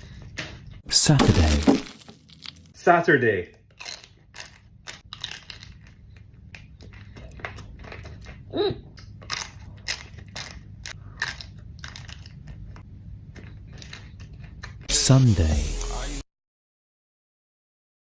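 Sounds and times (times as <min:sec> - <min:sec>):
chewing crunchy food: 0:00.0 - 0:02.8, 0:03.7 - 0:14.9.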